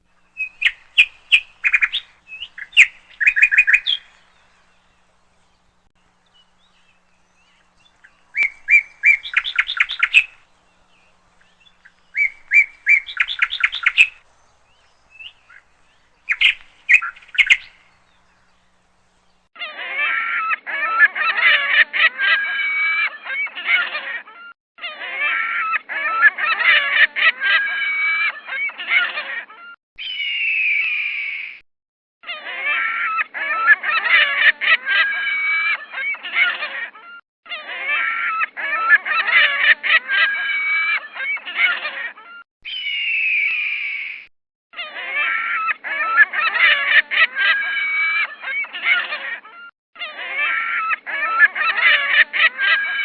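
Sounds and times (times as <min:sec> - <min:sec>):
birds calling: 0:00.0 - 0:19.5, 0:30.0 - 0:31.6, 0:32.2 - 0:53.0.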